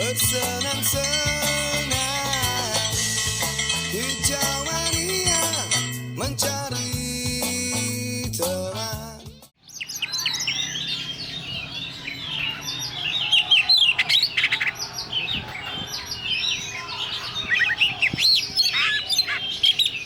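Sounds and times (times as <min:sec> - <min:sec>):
songbirds singing: 0:09.6 - 0:20.0.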